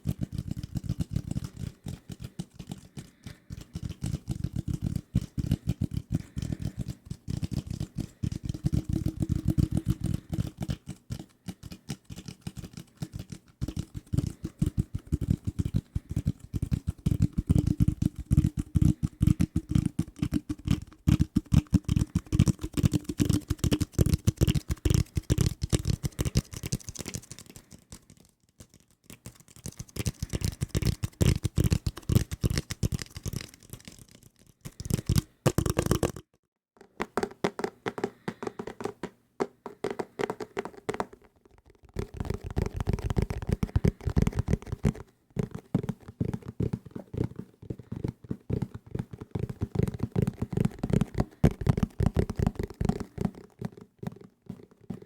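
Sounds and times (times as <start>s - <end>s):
fingertips tapping on desk objects: 36.8s - 55.0s.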